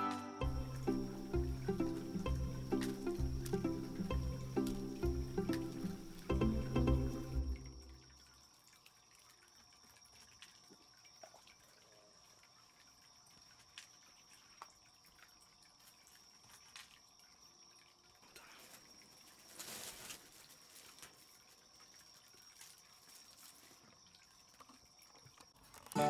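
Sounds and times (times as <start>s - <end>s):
faint high whine: 0.0s - 8.2s.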